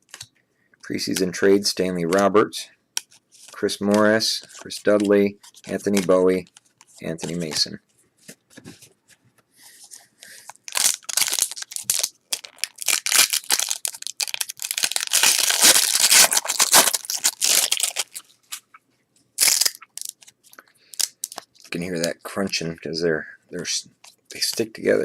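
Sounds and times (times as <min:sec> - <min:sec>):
cards peeled apart crackling: 0:10.6 - 0:18.7, 0:19.4 - 0:20.4.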